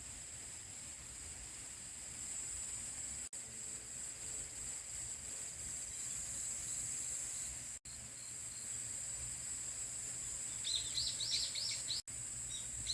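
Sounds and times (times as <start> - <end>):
insects trilling: 0.0 - 12.9
small bird chirping: 5.5 - 12.9.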